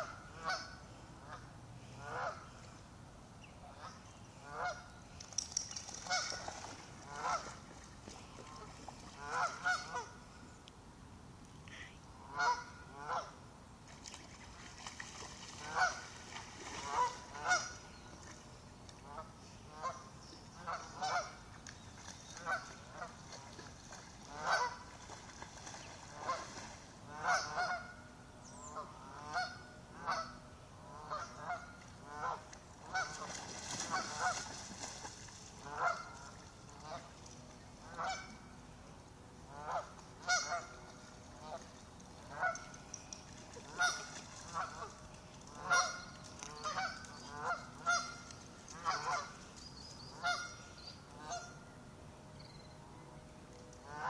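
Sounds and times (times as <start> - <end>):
waterfowl warning calls: 0.0 - 2.8, 3.6 - 5.0, 5.9 - 10.2, 12.2 - 13.4, 14.9 - 18.3, 19.0 - 38.6, 39.5 - 51.7.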